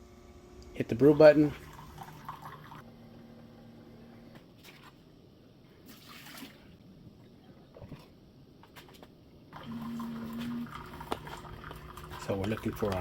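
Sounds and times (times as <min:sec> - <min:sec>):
coffee maker hum: 0:00.0 - 0:04.2, 0:09.6 - 0:13.0
water trickling into mug: 0:01.5 - 0:02.8, 0:09.6 - 0:13.0.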